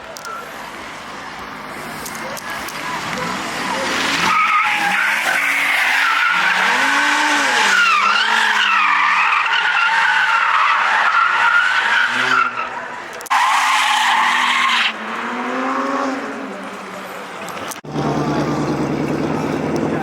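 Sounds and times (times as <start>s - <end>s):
car tyres squealing: 0.1s - 20.0s
high-revving engine: 1.4s - 9.0s, 14.2s - 20.0s.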